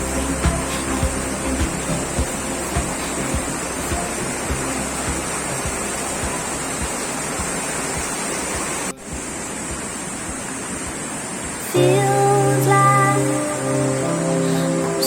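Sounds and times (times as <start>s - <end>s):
water rushing: 0.0s - 15.0s.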